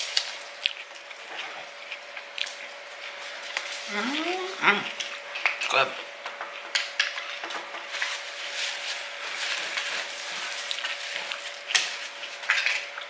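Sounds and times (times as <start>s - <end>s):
fork stirring salad in plastic: 6.5s - 13.0s.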